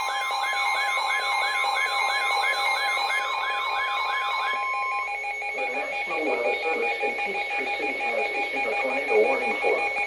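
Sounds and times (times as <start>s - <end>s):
steady electronic tones: 0.0s - 10.0s
falling siren-like sweep: 2.2s - 6.2s.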